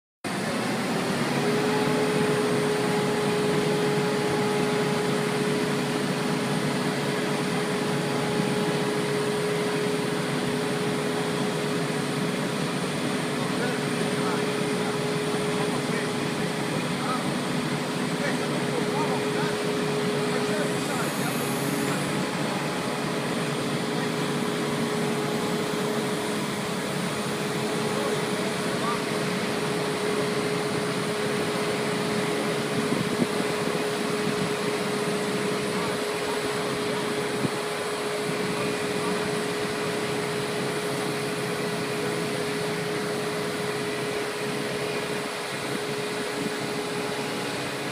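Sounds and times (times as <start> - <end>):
constant machine whine: 0.2 - 47.9
concrete pump whirring: 0.3 - 47.9.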